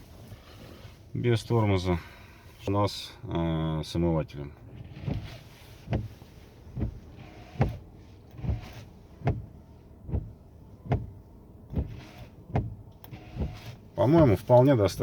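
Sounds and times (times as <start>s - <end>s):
windshield wipers swishing: 4.6s - 15.0s
wiper soft thump: 4.8s - 7.8s, 8.4s - 14.3s.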